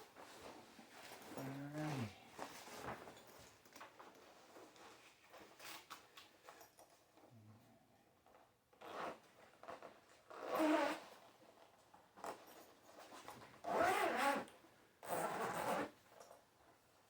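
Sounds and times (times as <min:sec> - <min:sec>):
zipper pulled open: 0:01.3 - 0:02.2, 0:08.8 - 0:11.1, 0:13.7 - 0:16.0.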